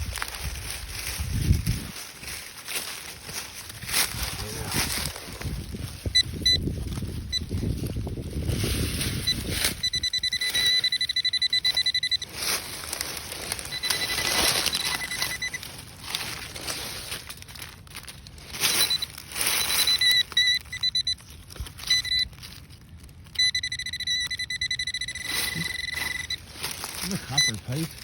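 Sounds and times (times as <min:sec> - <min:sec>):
rustling and scraping: 0:00.0 - 0:28.0
metal detector pulsing tone: 0:04.3 - 0:16.4, 0:18.5 - 0:22.4, 0:23.2 - 0:28.0.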